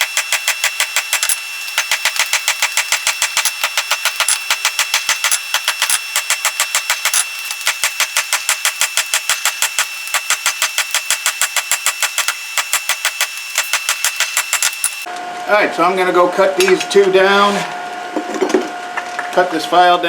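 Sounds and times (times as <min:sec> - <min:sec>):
high ringing tone: 0:00.0 - 0:15.1
power hammer striking steel: 0:00.0 - 0:15.1.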